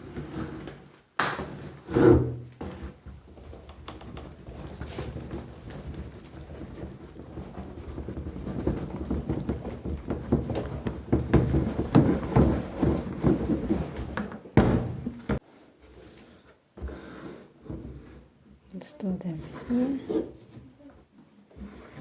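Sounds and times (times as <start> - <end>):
irregular knocking and clatter: 2.5 - 15.4.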